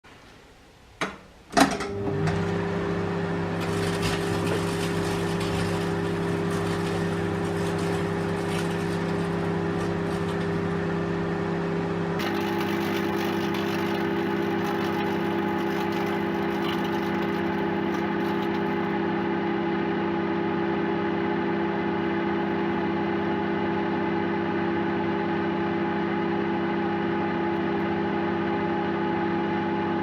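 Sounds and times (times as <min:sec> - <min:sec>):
microwave oven humming: 0:01.0 - 0:30.0
faint crackles: 0:12.2 - 0:18.9.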